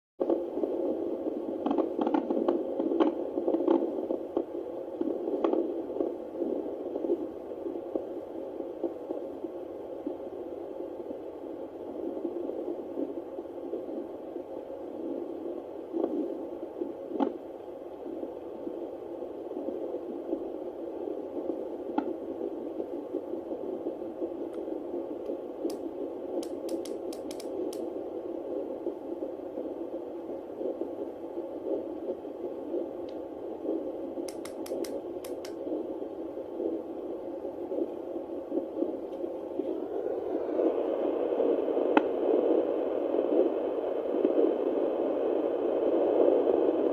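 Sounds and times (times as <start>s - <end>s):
faint fetal heartbeat: 0.2s - 46.9s
doppler speaker hissing and crackling: 10.9s - 46.9s
sharp clicks and ticks: 25.2s - 27.9s, 34.2s - 35.6s.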